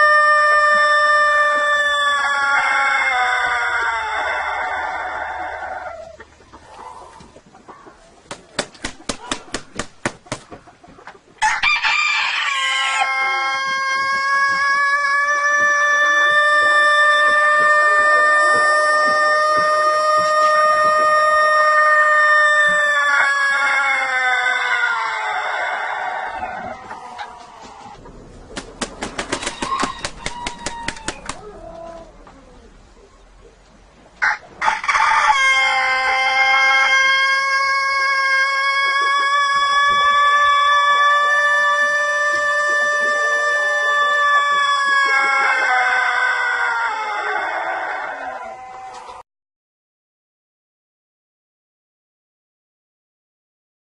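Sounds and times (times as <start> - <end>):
rooster crowing: 0.0 - 6.0, 11.4 - 28.0, 29.2 - 32.1, 34.2 - 49.0.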